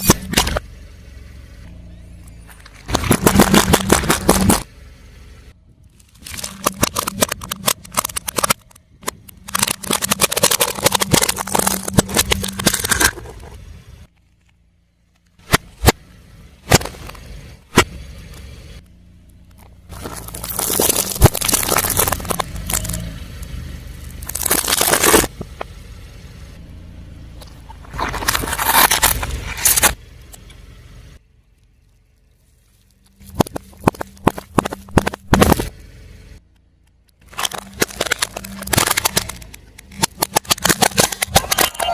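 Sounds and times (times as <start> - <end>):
low car hum: 0.0 - 41.9
objects crackling under tyre: 0.0 - 41.9.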